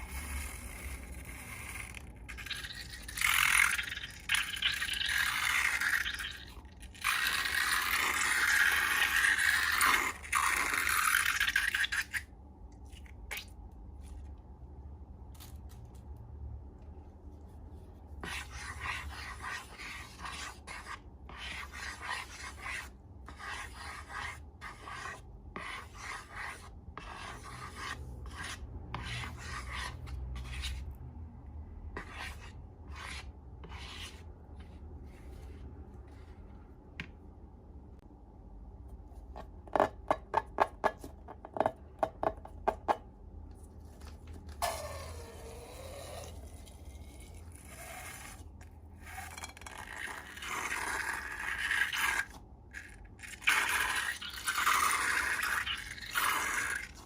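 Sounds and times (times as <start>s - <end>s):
rubbing and scraping strokes: 17.2s - 31.0s, 32.0s - 36.6s.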